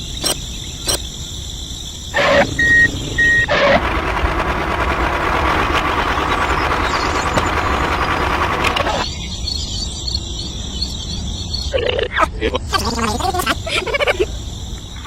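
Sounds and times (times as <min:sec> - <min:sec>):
high electronic beeps: 0:00.0 - 0:01.0, 0:02.2 - 0:03.9
steady rushing noise: 0:02.0 - 0:09.2.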